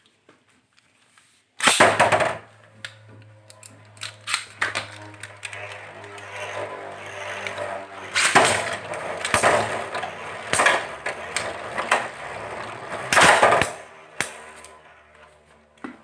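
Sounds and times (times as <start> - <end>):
spinning tops grinding on plastic: 1.7 - 15.8
spinning tops clashing: 4.1 - 14.8.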